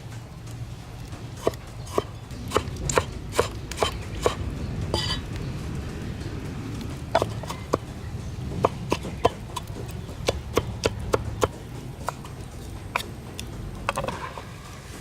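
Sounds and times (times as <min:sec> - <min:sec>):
knife chopping on wooden board: 0:01.4 - 0:04.4, 0:08.6 - 0:12.3.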